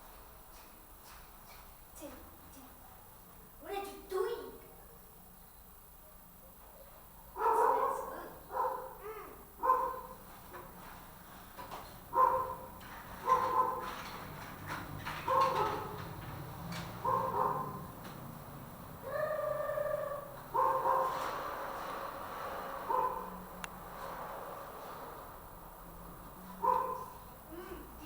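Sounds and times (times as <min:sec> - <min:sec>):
dog barking: 0:07.4 - 0:09.0, 0:09.6 - 0:10.2, 0:12.1 - 0:14.0, 0:15.2 - 0:16.0, 0:17.0 - 0:17.9, 0:19.4 - 0:21.2, 0:22.9 - 0:23.4, 0:26.6 - 0:27.2.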